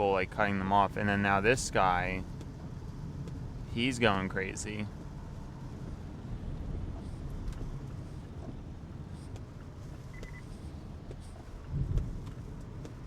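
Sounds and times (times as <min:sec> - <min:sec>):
car road and engine rumble: 0:00.0 - 0:13.0
short beep: 0:10.1 - 0:10.5.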